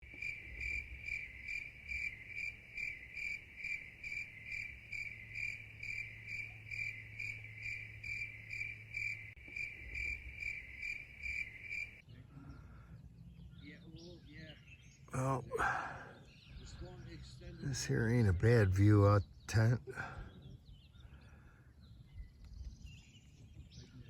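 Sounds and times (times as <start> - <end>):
insect chirping: 0.0 - 12.0.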